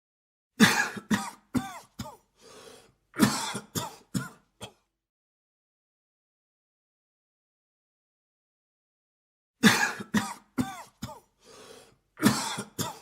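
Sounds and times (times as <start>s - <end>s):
man coughing: 0.6s - 2.3s, 3.2s - 4.9s, 9.6s - 11.3s, 12.2s - 13.0s
man drawing breath: 2.4s - 3.0s, 11.4s - 12.0s.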